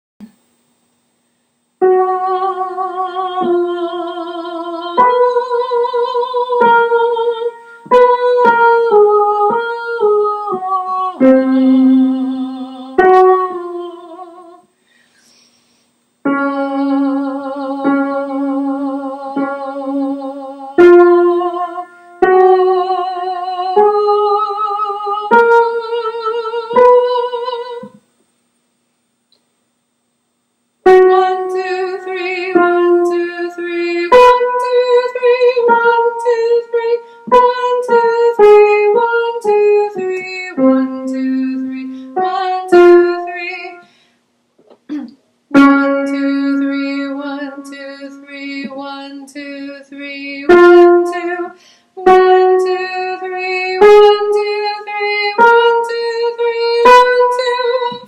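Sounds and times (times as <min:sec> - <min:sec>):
wordless alto melody: 0:30.9 - 0:43.8, 0:50.5 - 0:58.0.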